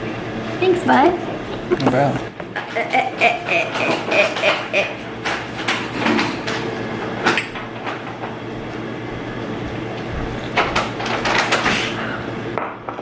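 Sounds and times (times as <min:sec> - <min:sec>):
steady hum: 0:00.0 - 0:12.7.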